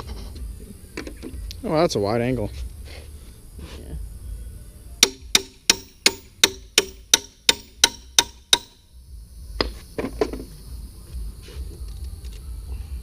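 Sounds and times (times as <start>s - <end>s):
hammer striking metal: 5.0s - 8.8s.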